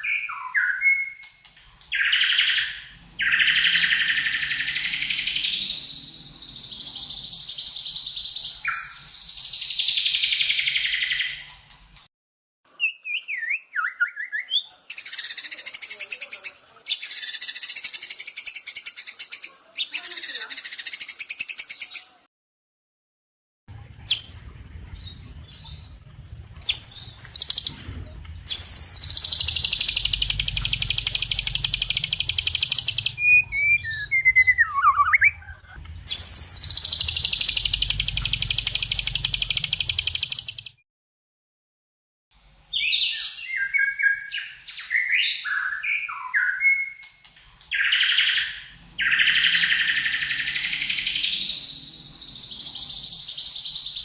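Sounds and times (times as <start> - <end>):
lower whistled bird notes: 26.6 - 27.8, 28.5 - 35.4, 36.1 - 40.8
quick bird chirps: 26.6 - 27.8, 28.4 - 40.8
songbird trills: 28.5 - 40.8.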